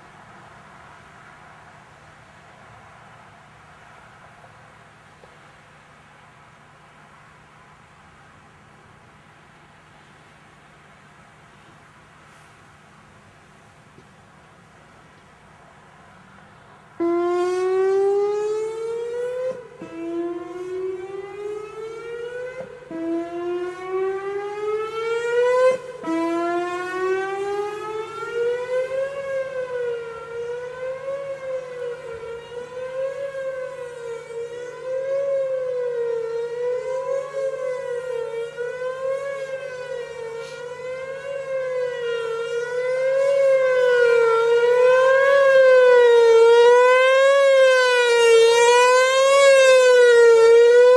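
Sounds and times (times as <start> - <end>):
outdoor warning siren: 14.5 - 50.9.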